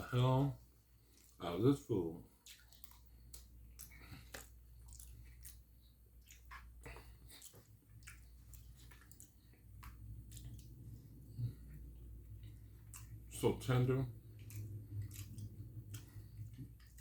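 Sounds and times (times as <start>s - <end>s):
close-up chewing: 0.8s - 17.0s
wet mouth clicks and smacks: 2.4s - 10.9s, 14.3s - 17.0s.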